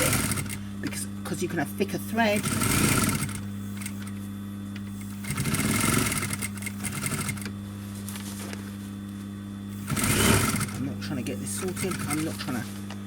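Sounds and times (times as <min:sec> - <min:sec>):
sewing machine stitching: 0:00.0 - 0:00.6, 0:02.3 - 0:04.1, 0:04.9 - 0:07.5, 0:09.8 - 0:10.8, 0:11.5 - 0:12.5
motor hum: 0:00.0 - 0:13.0.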